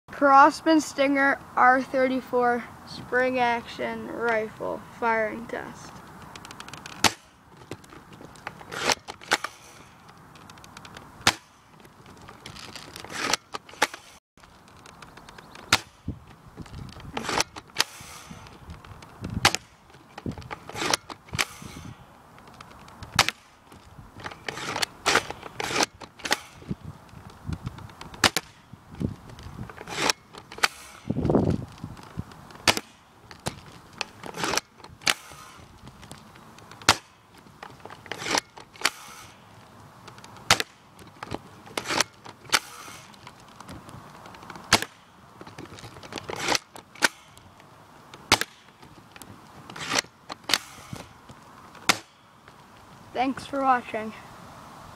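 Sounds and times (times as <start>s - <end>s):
airsoft rifle shots: 32.6s - 33.0s, 44.7s - 45.1s, 48.3s - 48.7s.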